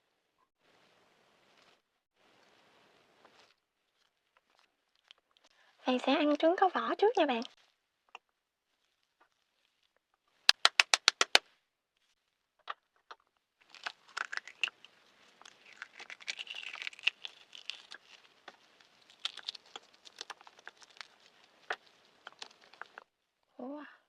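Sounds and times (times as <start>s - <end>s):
eggshell crackling: 3.4s - 5.5s, 7.2s - 11.4s, 13.6s - 23.2s.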